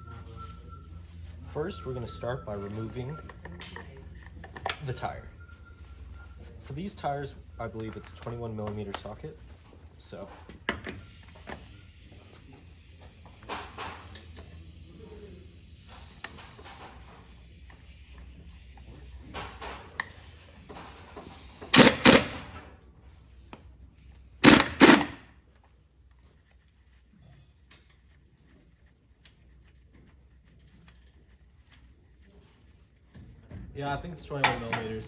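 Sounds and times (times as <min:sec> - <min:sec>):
sharp bursts of impact wrench: 0:19.2 - 0:22.6, 0:24.4 - 0:25.3
tool clicks and handling: 0:24.4 - 0:25.2.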